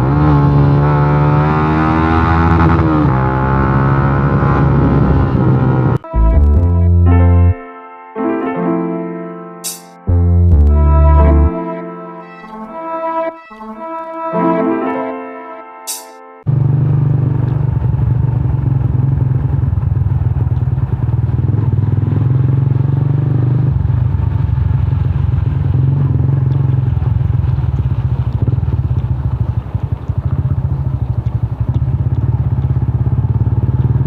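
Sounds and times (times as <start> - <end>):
motorcycle engine idling: 16.5 - 22.2, 26.3 - 34.0.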